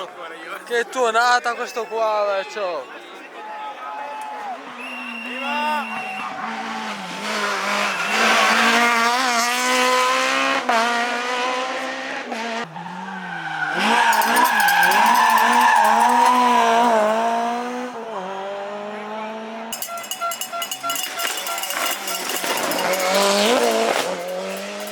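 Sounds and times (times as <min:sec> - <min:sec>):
tyres skidding with squeal: 0:01.5 - 0:10.6, 0:12.3 - 0:24.9
car engine revving: 0:06.1 - 0:24.9
rapid crackle: 0:20.1 - 0:24.9.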